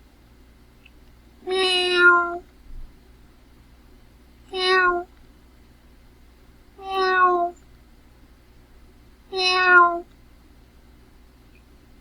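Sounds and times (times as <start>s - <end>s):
cat meowing: 1.5s - 2.4s, 4.5s - 5.1s, 6.8s - 7.6s, 9.3s - 10.1s.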